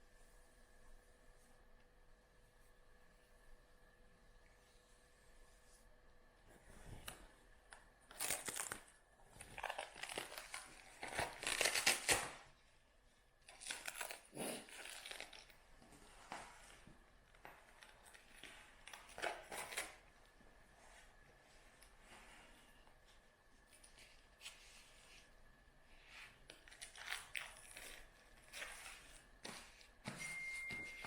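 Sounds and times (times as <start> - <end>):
rustling and crinkling: 5.3 - 12.8, 13.4 - 31.0.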